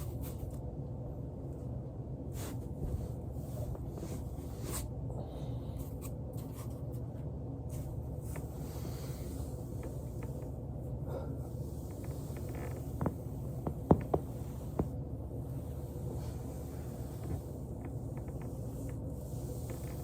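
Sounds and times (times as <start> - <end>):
body rustling on foam roller: 11.5 - 20.0.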